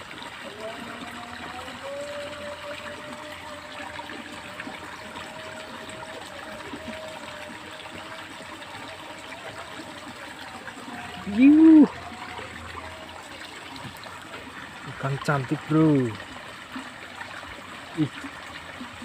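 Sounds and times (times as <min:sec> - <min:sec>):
water trickling in a ditch: 0:00.0 - 0:19.0.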